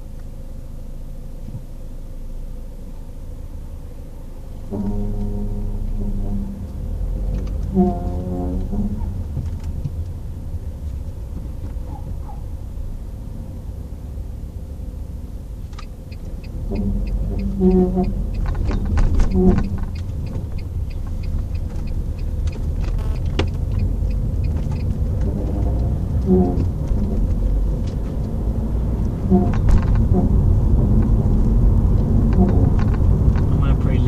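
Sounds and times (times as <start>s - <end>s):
road rumble inside car: 0.0s - 34.0s
car suspension creaking: 4.5s - 13.2s, 15.1s - 34.0s
car seat rattling: 17.0s - 33.7s.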